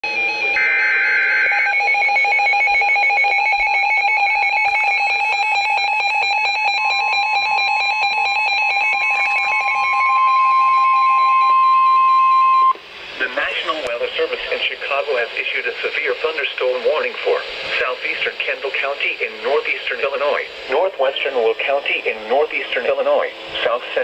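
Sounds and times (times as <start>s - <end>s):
steady warning alarm tone: 0.0s - 12.8s
data header squawk: 0.1s - 3.2s
rapid pulsing alarm beep: 0.1s - 12.8s.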